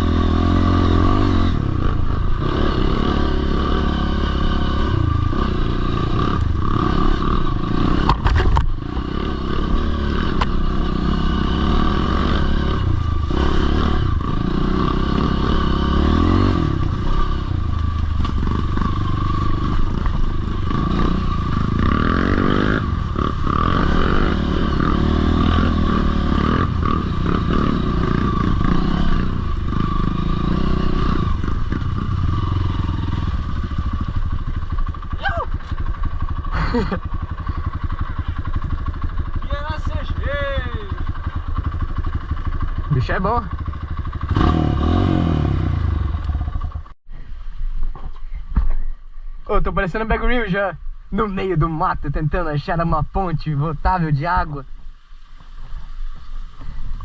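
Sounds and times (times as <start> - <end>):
dirt bike engine revving: 0.0 - 47.0
bike rattling over bumps: 2.0 - 40.0.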